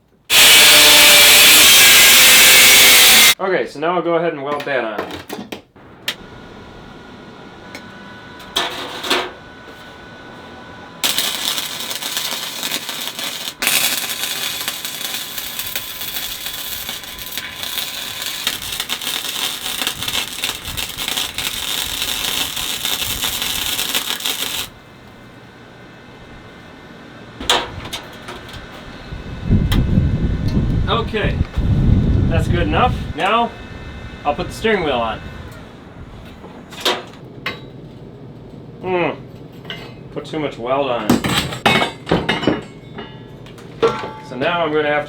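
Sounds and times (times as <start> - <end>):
welding arc crackling: 0.3 - 3.4, 11.0 - 25.3
steady hum: 5.8 - 40.8.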